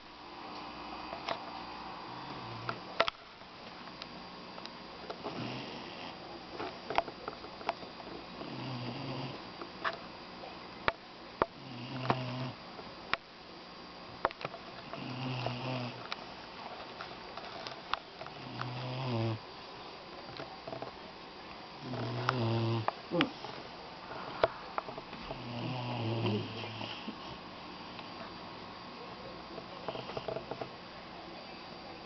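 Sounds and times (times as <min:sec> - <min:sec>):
puppy snoring: 0:02.1 - 0:02.8, 0:05.2 - 0:06.2, 0:08.4 - 0:09.5, 0:11.6 - 0:12.6, 0:14.8 - 0:16.0, 0:18.3 - 0:19.4, 0:21.8 - 0:23.6, 0:25.2 - 0:27.4, 0:29.8 - 0:30.6.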